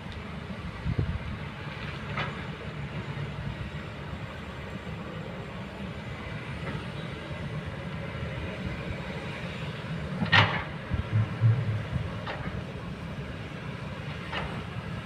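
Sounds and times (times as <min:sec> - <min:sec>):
excavator diesel engine running: 0:00.0 - 0:15.0
low thuds: 0:10.9 - 0:12.2.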